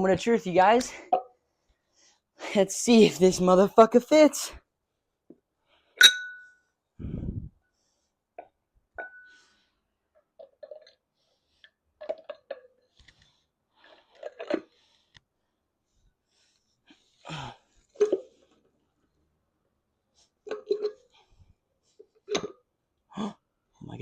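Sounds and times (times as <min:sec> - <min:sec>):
ringing metallic pings: 0:06.0 - 0:06.6.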